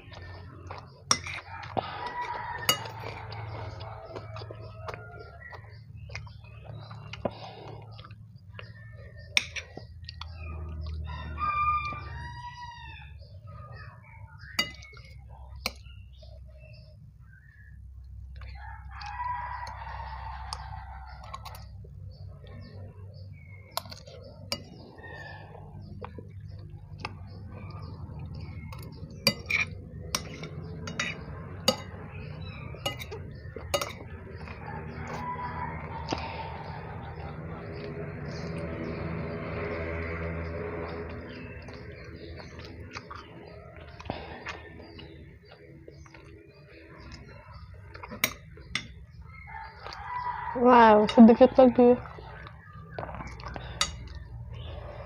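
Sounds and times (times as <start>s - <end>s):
utensils clinking against a bowl: 0.1s - 7.4s, 9.0s - 11.0s, 14.4s - 15.9s, 23.7s - 36.4s, 40.8s - 55.0s
rooster crowing: 1.4s - 5.8s, 10.9s - 13.3s, 18.5s - 21.5s, 34.4s - 37.6s, 49.3s - 51.2s
utensil clinking against dish: 2.6s - 3.3s, 28.6s - 34.6s, 53.5s - 54.2s.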